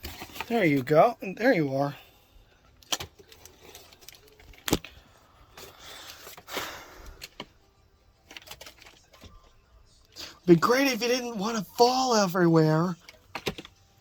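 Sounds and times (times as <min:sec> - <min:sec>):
radio being handled: 0:02.7 - 0:07.6, 0:08.2 - 0:09.6, 0:13.0 - 0:13.8.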